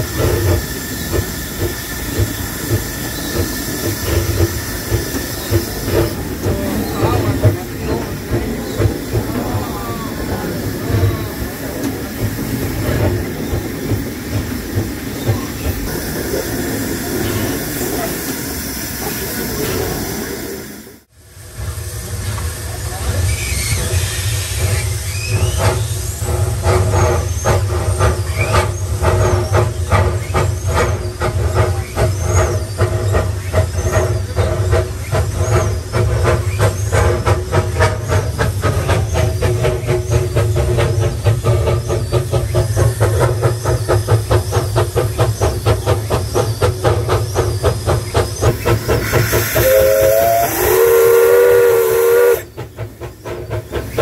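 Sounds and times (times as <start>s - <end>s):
steam locomotive exhaust beating: 0.0s - 54.0s
steam whistle: 49.0s - 52.5s.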